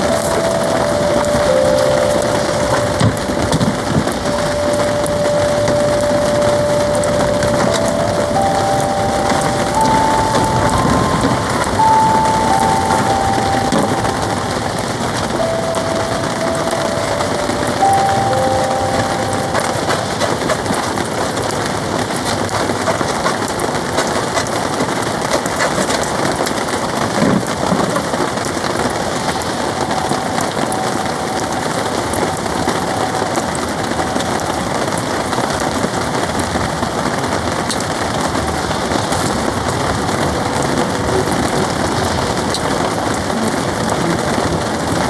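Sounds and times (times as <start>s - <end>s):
heavy rain on a tarp: 0.0s - 45.0s.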